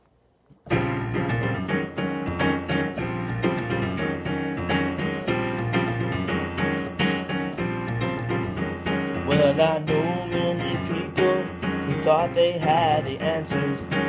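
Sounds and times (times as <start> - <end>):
keyboard playing piano chords: 0.6 - 14.0.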